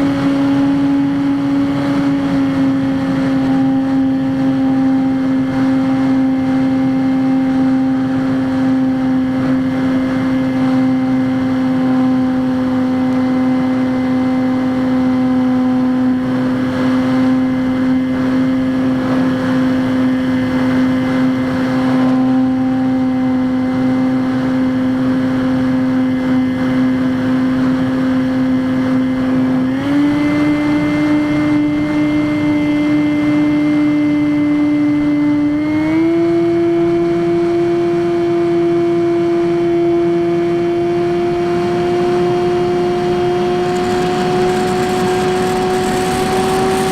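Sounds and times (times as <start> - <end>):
electric motor and propeller whining: 41.4 - 46.9
wind rush: 43.4 - 46.9.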